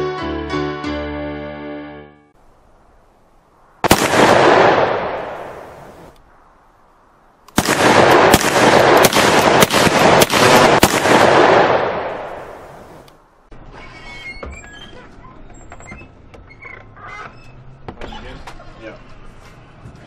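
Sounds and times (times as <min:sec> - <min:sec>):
handgun shots echoing: 0:03.8 - 0:05.8, 0:07.5 - 0:13.1.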